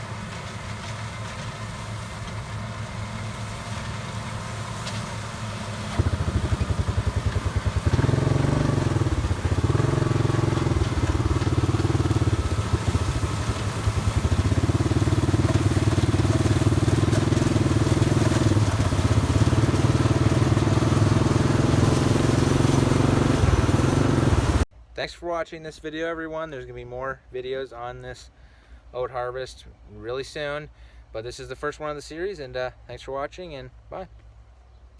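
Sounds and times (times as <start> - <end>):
harvester engine chugging: 0.0 - 24.6.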